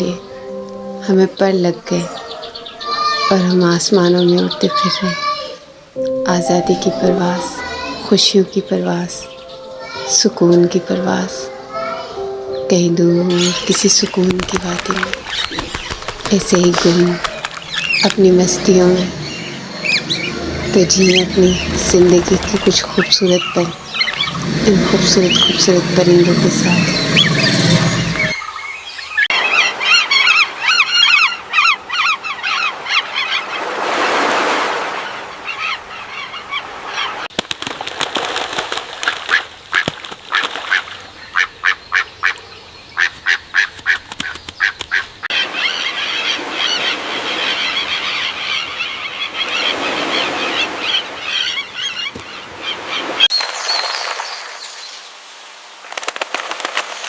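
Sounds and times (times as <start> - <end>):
flock of birds calling: 1.4 - 5.9, 13.3 - 34.4, 35.2 - 54.3
sharp repeated bird calls: 13.3 - 33.7, 35.2 - 51.7.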